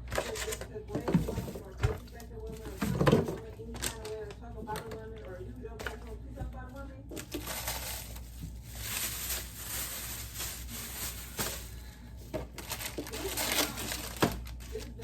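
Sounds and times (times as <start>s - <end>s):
crinkling handling noise: 0.0s - 15.0s.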